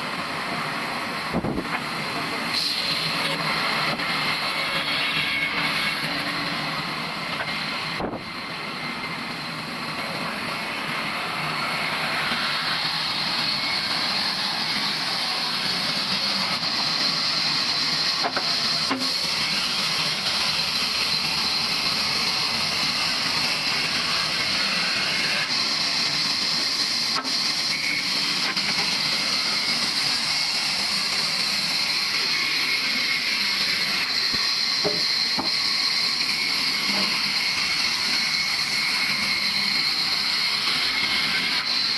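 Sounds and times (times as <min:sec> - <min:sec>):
saw cutting through wood: 0:01.0 - 0:41.9.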